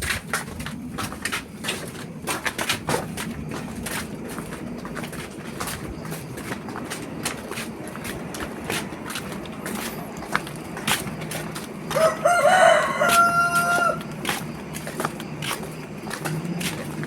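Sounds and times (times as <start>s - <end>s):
rooster crowing: 11.9s - 14.2s.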